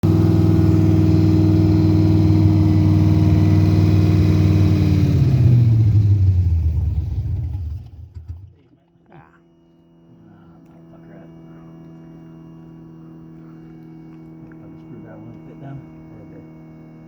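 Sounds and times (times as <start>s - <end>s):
car engine idling and stalling: 0.0s - 8.8s.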